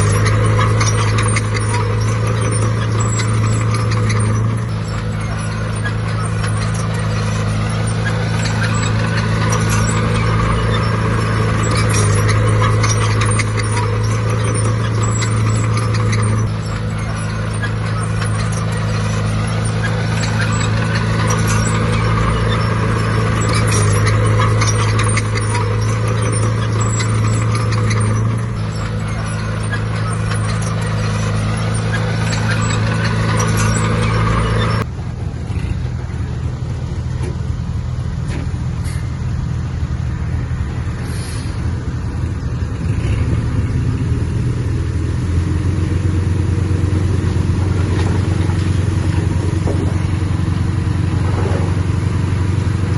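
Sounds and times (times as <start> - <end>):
metal clatter: 0.0 - 34.9
diesel machinery engine running: 0.0 - 52.9.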